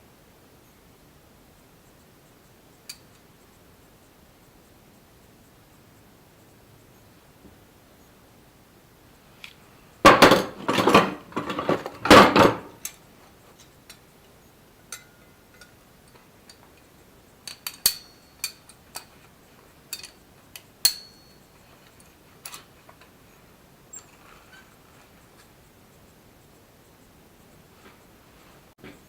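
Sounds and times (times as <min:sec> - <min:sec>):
metal clanking and scraping: 0:10.1 - 0:12.9
ringing metal clinks: 0:14.9 - 0:19.2, 0:19.9 - 0:22.7.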